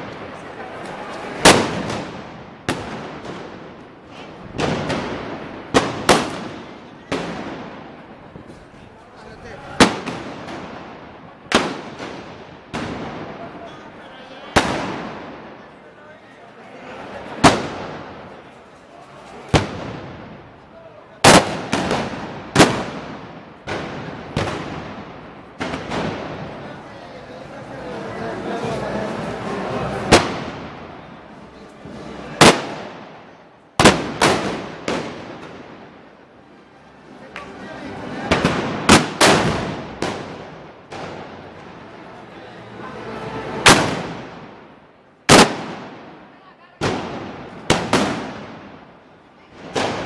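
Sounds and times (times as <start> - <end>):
echoing gunpowder bangs: 45.3 - 46.1.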